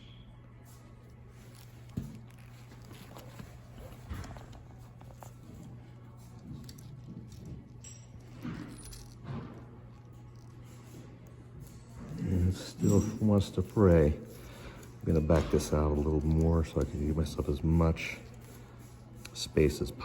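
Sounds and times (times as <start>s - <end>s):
clicks of cable and tools handled: 1.5s - 10.8s.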